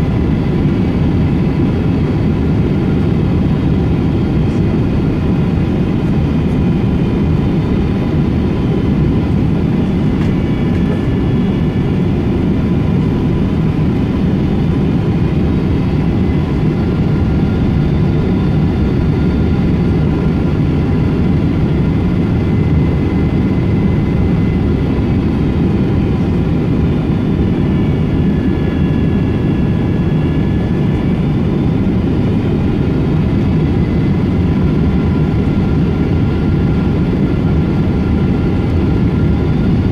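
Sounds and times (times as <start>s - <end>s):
airflow and engine rumble in cabin: 0.0s - 39.9s
faint whining engine tones: 0.0s - 39.9s.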